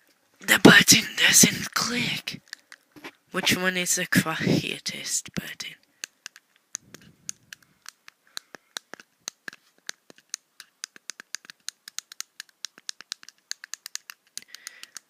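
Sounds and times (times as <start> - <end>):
plastic clicker buttons clicking: 6.0 - 15.0.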